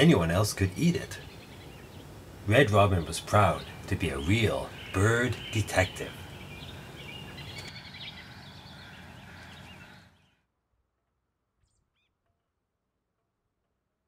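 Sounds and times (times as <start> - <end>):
steady background hiss: 0.0 - 10.1
birds chirping: 0.0 - 10.5.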